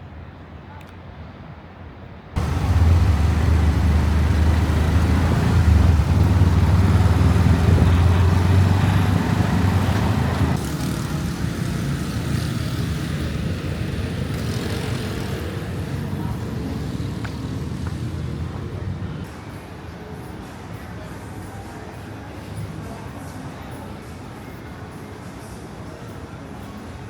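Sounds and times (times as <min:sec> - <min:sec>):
road noise: 0:02.3 - 0:20.2
motor vehicles passing close: 0:02.4 - 0:19.3.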